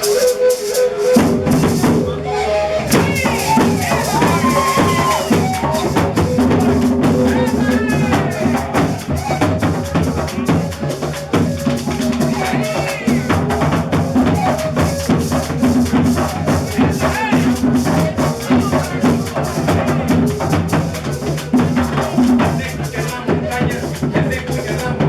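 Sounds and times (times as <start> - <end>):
maracas shaking: 0.0 - 2.2, 2.9 - 25.0
drums: 0.0 - 25.0.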